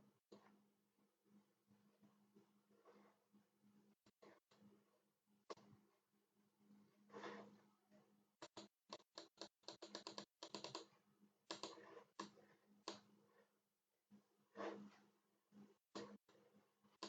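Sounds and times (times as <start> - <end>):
computer keyboard typing: 8.4 - 10.9, 11.5 - 13.0.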